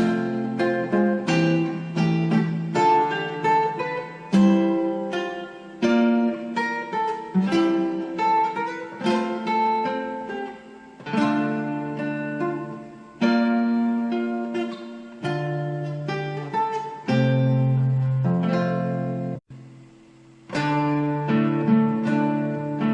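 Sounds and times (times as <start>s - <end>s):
guitar chords and plucked notes: 0.0s - 22.9s.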